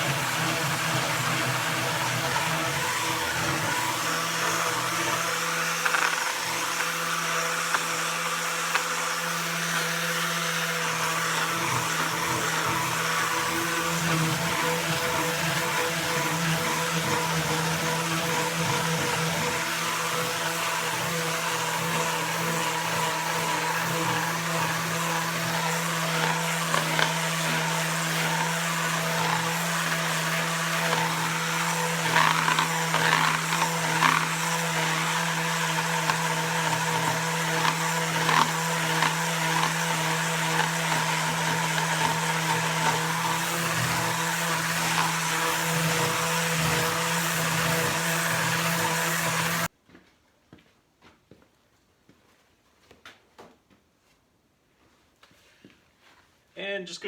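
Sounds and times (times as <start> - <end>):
power sander running: 0.0 - 49.7
scratchy sanding bursts: 7.0 - 49.7.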